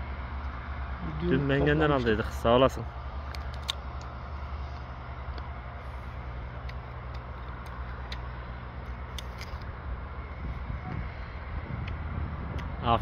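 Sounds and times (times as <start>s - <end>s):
low engine hum: 0.0s - 13.0s.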